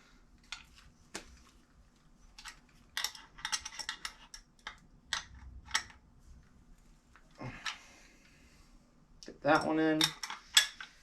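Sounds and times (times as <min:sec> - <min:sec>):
small metallic clicks and clinks: 0:02.4 - 0:06.0, 0:09.5 - 0:11.0.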